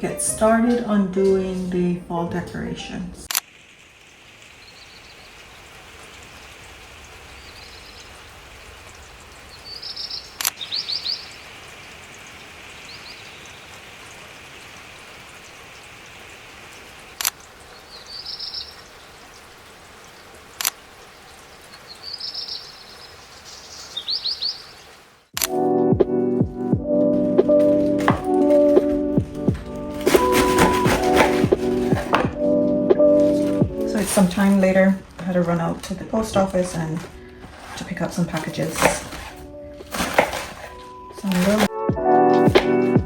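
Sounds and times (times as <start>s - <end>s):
outdoor hiss: 3.2s - 43.0s
songbird singing: 3.5s - 25.0s.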